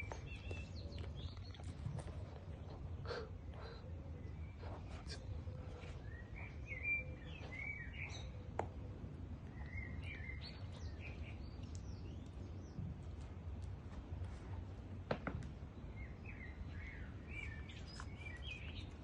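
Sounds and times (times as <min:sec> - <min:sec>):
bird chirps: 0:03.6 - 0:08.5, 0:09.5 - 0:12.8.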